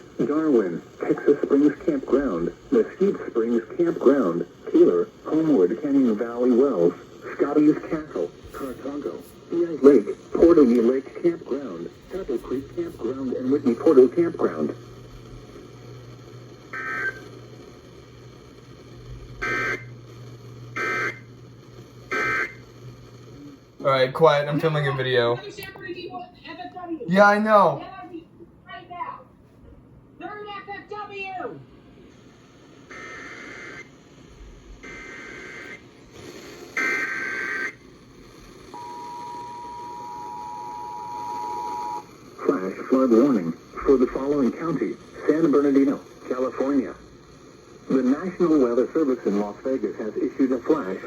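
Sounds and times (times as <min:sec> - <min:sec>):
two-tone attention signal: 0:38.8 - 0:42.0.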